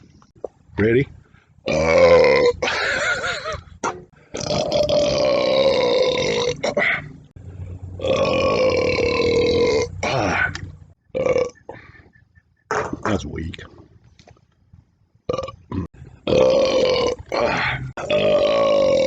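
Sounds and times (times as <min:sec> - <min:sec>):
man belching loudly: 0:01.6 - 0:02.8, 0:04.3 - 0:07.1, 0:08.0 - 0:11.7, 0:15.3 - 0:19.0.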